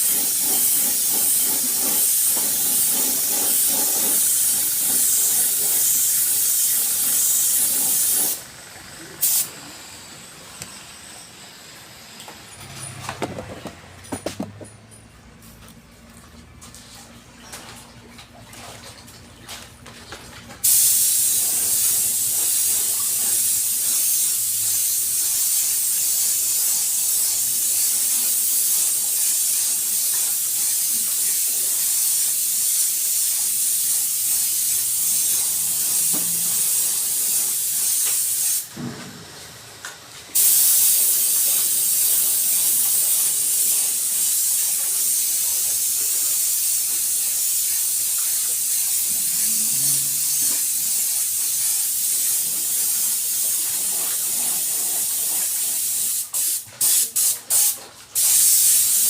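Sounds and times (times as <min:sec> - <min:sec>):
compressed air hissing: 0:00.0 - 0:08.5, 0:09.1 - 0:10.5, 0:20.6 - 0:30.5, 0:32.3 - 0:38.8, 0:40.4 - 0:59.0.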